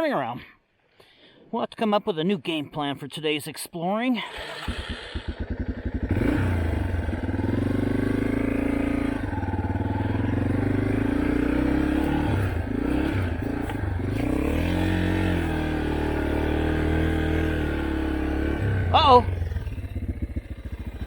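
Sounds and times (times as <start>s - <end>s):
dirt bike engine revving: 4.2s - 21.0s.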